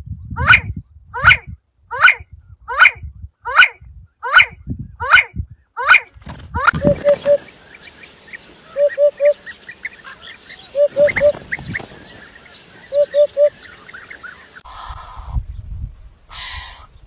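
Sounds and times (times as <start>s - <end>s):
small birds chirping faintly: 0.8s - 17.0s
bird calling three-note calls: 6.8s - 11.4s, 12.7s - 14.3s.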